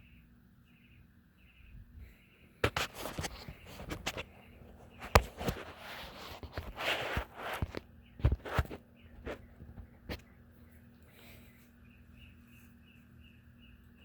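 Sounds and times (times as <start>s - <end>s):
faint low hum: 0.0s - 14.0s
rustling: 2.6s - 12.8s.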